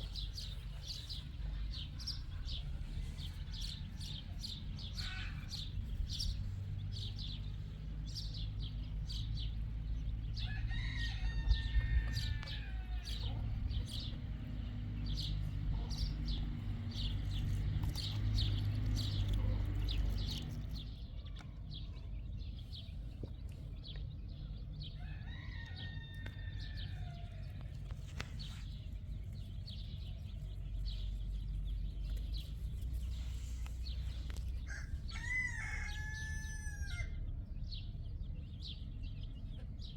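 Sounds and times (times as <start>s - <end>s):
steady low rumble: 0.0s - 25.3s, 26.0s - 39.9s
rooster crowing: 10.4s - 13.3s, 25.0s - 27.6s, 34.6s - 37.3s.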